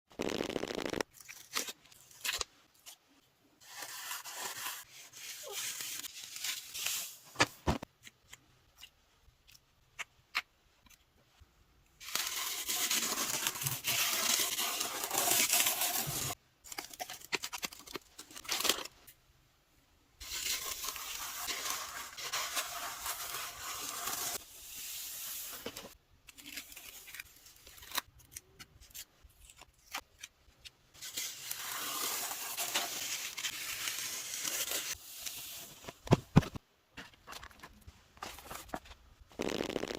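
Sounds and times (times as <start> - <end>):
sand pouring and hissing: 20.2 - 25.6.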